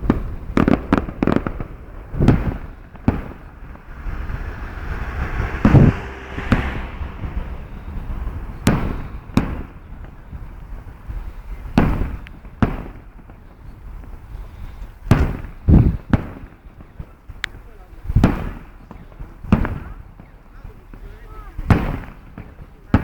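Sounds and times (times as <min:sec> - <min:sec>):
distant fireworks bangs: 0:00.0 - 0:14.2.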